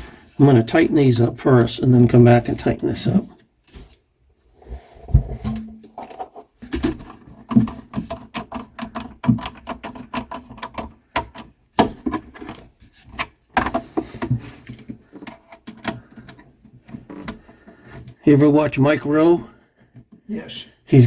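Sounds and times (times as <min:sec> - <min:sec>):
clicks and knocks of tightening screws: 0:06.7 - 0:18.2.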